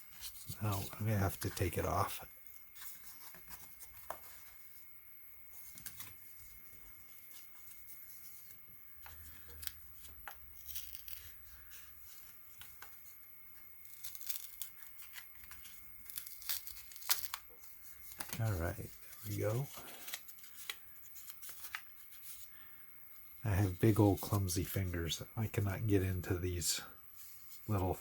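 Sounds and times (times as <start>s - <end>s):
packaging tearing and crinkling: 10.6s - 11.4s, 13.8s - 18.4s.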